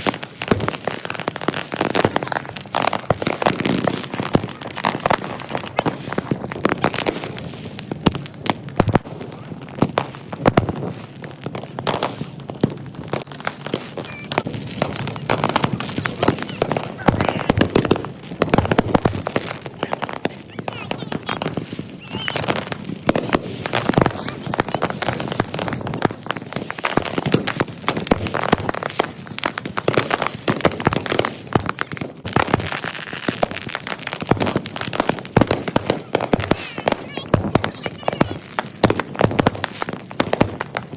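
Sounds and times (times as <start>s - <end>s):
fireworks bangs and pops: 0.0s - 40.9s
short high whistles: 22.0s - 22.5s.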